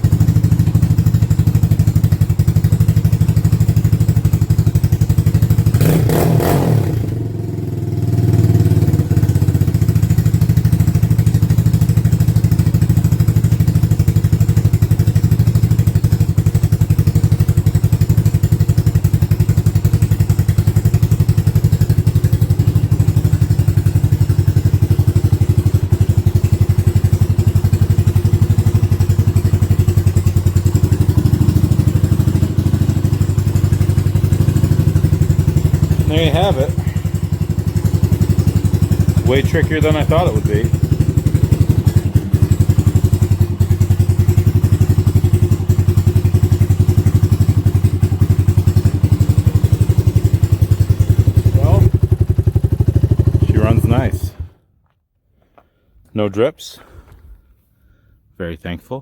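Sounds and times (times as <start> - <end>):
engine running steadily: 14.0 - 54.4.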